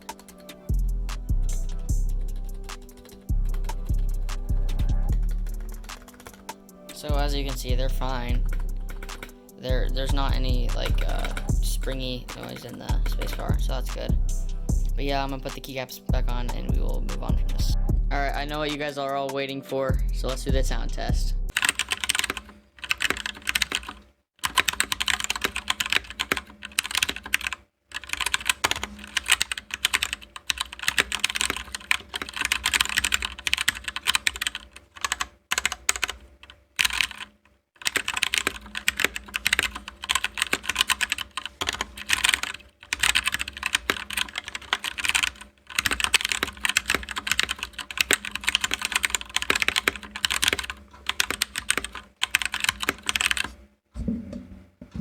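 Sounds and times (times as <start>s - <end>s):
mechanical keyboard typing: 2.2s - 14.1s, 21.5s - 53.6s.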